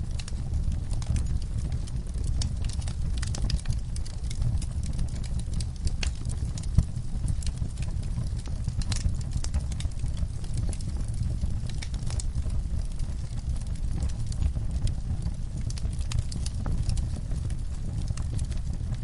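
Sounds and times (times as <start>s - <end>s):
wood fire crackling and popping: 0.0s - 19.0s.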